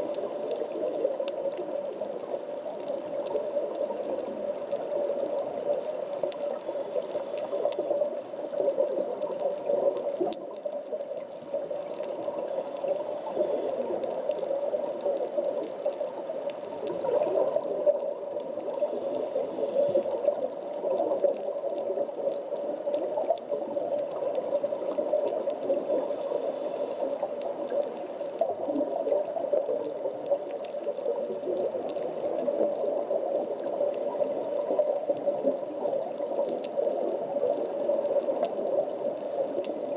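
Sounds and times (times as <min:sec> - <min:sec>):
faint clicks: 0:00.0 - 0:39.9
muffled underwater water noise: 0:00.0 - 0:39.9
high hiss: 0:18.8 - 0:20.1, 0:25.8 - 0:27.4.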